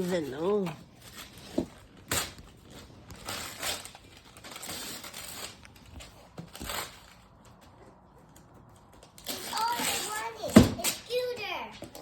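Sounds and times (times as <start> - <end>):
wrapping paper tearing and crumpling: 0.0 - 7.5, 9.0 - 11.6.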